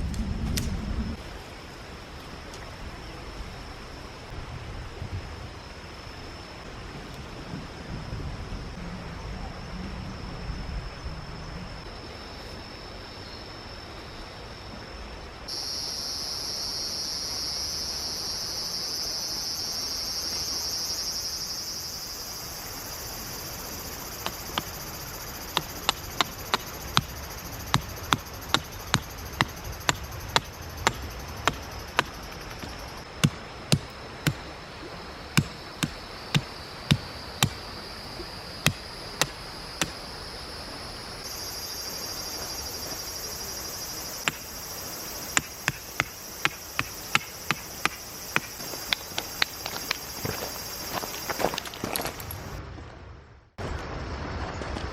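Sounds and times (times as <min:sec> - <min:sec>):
insects shrilling: 0:20.5 - 0:34.4, 0:41.3 - 0:52.6
mountain stream rushing: 0:22.4 - 0:41.3, 0:42.3 - 0:52.7
sharp knocks: 0:25.5 - 0:34.4, 0:35.4 - 0:37.6.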